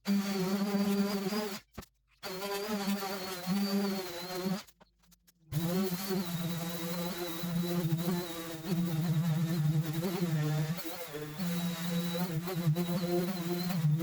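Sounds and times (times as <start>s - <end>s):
power sander buzzing on metal: 5.6s - 14.0s.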